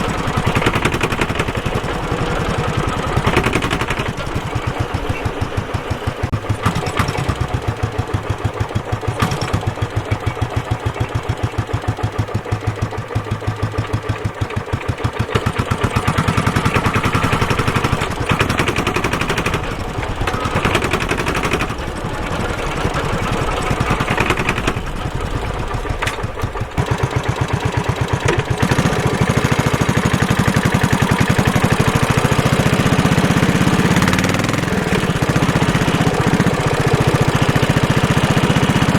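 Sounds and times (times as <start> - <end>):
motorcycle engine thumping at low revs: 0.0 - 38.9.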